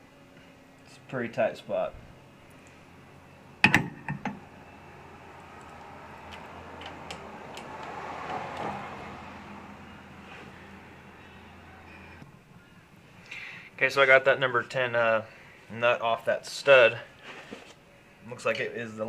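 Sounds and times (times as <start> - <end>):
faint rustling: 17.0 - 17.8.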